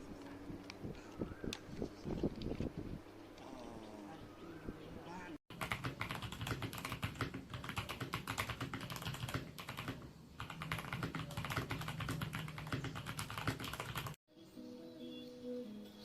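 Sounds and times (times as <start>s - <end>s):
mechanical keyboard typing: 5.5s - 14.2s.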